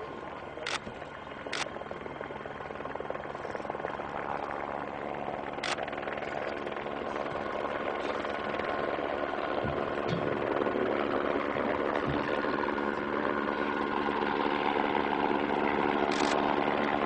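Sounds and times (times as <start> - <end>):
aircraft drone in flight: 0.0 - 17.0
camera shutter click: 16.1 - 16.4.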